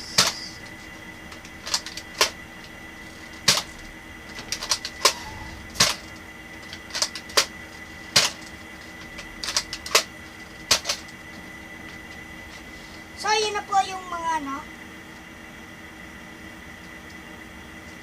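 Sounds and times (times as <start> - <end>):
toy dart blaster clicks and snaps: 0.2 - 0.4, 1.3 - 2.4, 9.4 - 10.1, 10.7 - 11.0.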